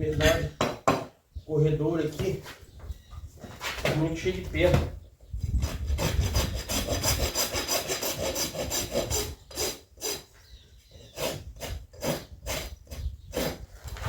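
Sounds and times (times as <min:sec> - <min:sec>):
rasp filing a hoof: 0:05.4 - 0:14.0.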